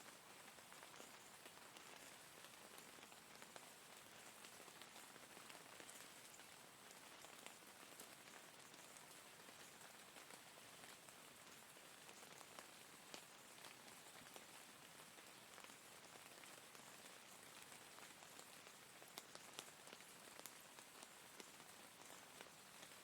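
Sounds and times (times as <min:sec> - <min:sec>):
faint steady rain: 0:00.0 - 0:23.0
raindrops ticking: 0:00.5 - 0:23.0.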